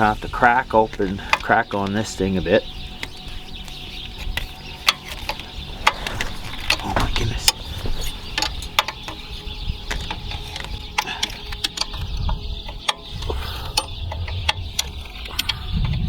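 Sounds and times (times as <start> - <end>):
low handling rumble: 5.4 - 9.9, 12.3 - 16.0.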